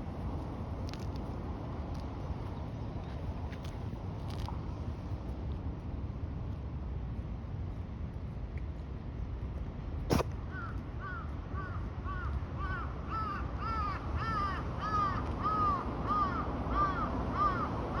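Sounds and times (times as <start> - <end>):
deer sneezing: 10.1 - 10.3
crow cawing: 11.0 - 17.7.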